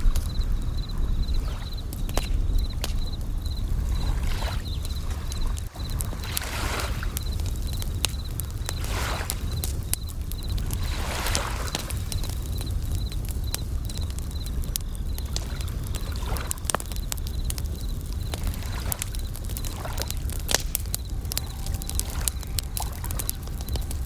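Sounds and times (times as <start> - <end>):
low rumble: 0.0 - 6.3
waves washing: 0.0 - 14.6
campfire crackling and snapping: 0.0 - 24.0
crickets chirping: 0.0 - 24.0.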